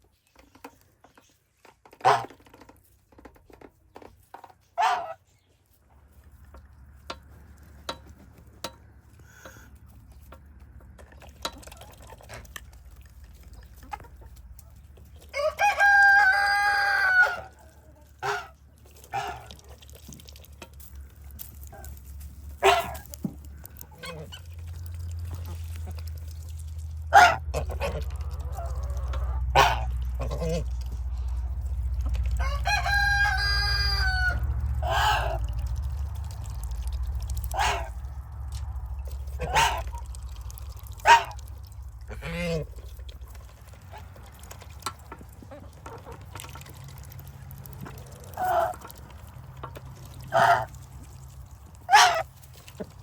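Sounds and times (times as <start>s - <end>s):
chickens clucking: 0.1s - 53.0s
low steady rumble: 2.0s - 53.0s
rooster crowing: 15.4s - 17.5s, 32.4s - 34.5s.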